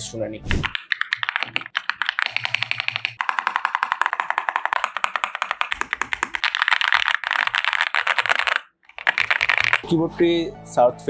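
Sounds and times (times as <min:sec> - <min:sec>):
fast mechanical keyboard typing: 0:00.6 - 0:09.8.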